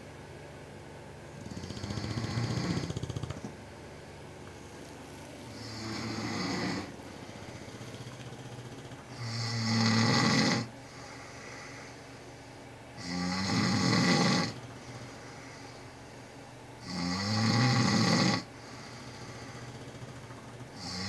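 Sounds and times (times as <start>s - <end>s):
person snoring: 1.4s - 3.3s, 5.5s - 7.0s, 7.6s - 10.7s, 13.0s - 15.1s, 16.8s - 20.2s, 20.8s - 21.0s.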